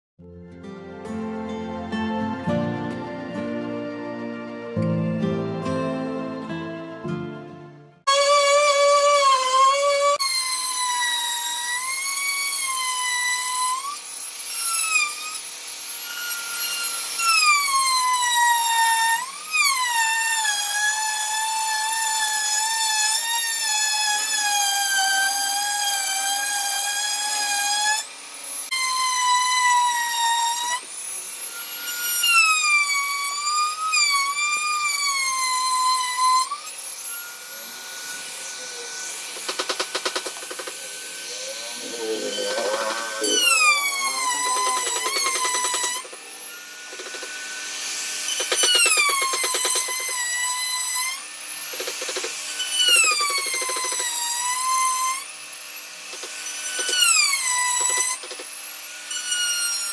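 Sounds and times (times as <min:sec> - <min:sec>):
power tool whining on wood: 0:08.0 - 0:59.9.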